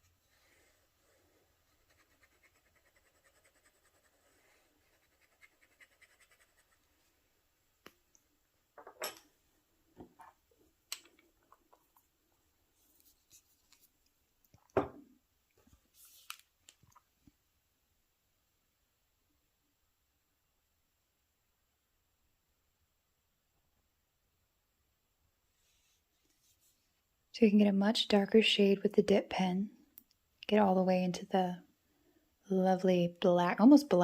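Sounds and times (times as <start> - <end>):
pen scratching on paper: 1.7 - 4.2, 4.8 - 6.8.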